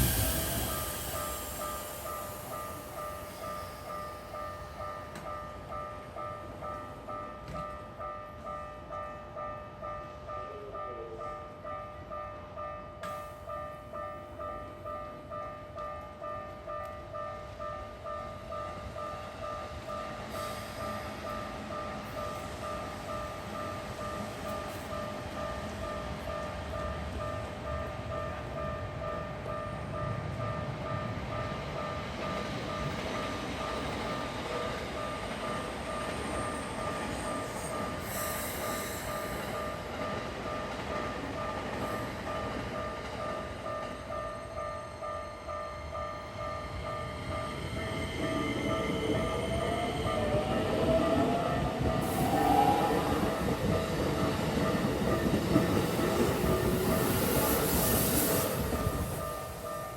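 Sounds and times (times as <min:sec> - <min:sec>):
rail rumble: 0:00.0 - 0:05.3.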